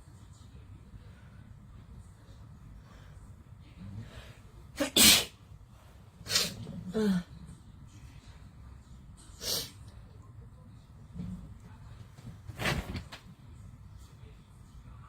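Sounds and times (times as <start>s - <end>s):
woman sneezing: 4.8s - 5.3s.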